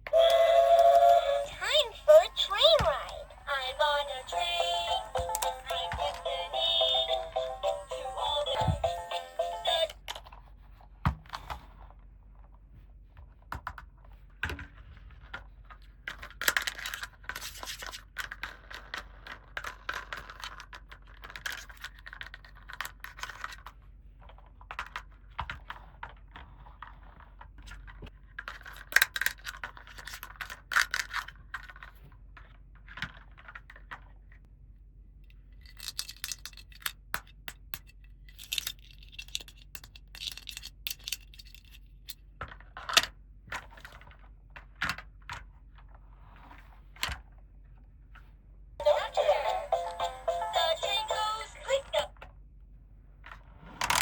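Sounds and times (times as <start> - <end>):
plastic toy pieces clicking: 35.6 - 41.8.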